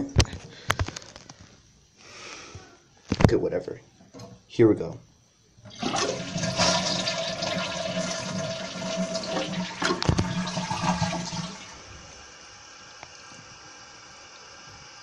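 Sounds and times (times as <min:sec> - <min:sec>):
toilet flushing: 0:05.6 - 0:15.0.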